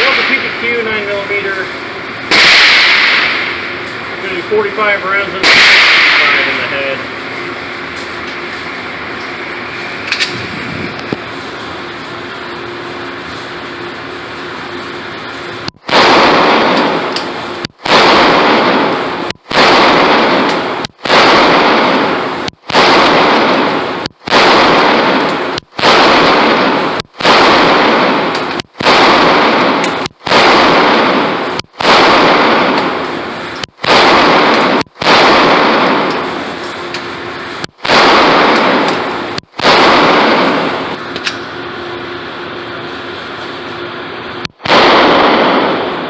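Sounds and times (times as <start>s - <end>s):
pistol shots echoing indoors: 2.3s - 3.7s, 5.4s - 6.7s, 15.9s - 37.1s, 37.8s - 41.0s, 44.6s - 46.0s.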